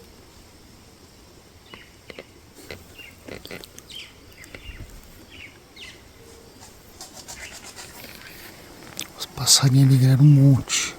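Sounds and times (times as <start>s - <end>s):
steady outdoor hiss: 0.0s - 10.9s
small birds chirping: 1.6s - 10.9s.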